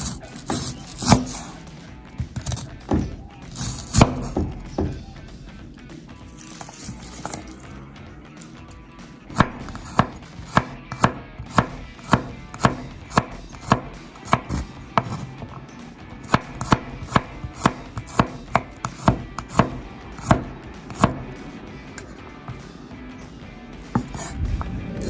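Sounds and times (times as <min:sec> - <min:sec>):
knife chopping on cutting board: 0:00.0 - 0:01.6, 0:02.2 - 0:05.0, 0:09.3 - 0:15.6, 0:16.2 - 0:21.3, 0:23.9 - 0:24.4.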